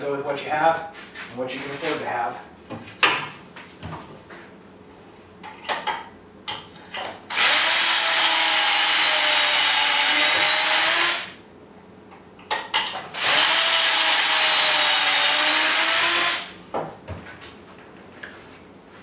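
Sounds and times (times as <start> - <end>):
power drill whining: 7.3 - 11.3, 13.2 - 16.5.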